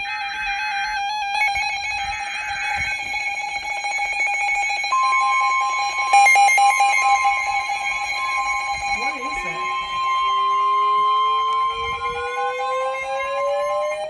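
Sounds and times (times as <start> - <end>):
pulsing electronic alarm tone: 1.3 - 14.0
single-pitch warning alarm tone: 3.8 - 14.0
buzzy digital data burst: 5.0 - 12.8.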